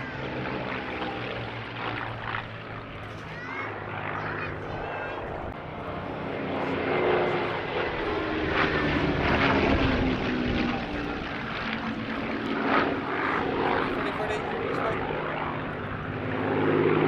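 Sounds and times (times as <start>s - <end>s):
propeller plane engine flying past: 0.0s - 17.0s.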